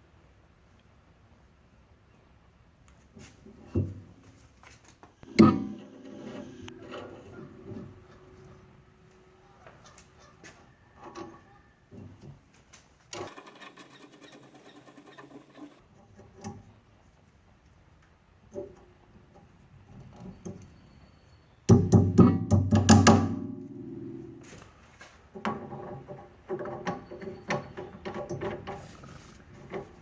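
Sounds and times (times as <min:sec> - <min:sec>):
guitar music: 0:23.4 - 0:24.5.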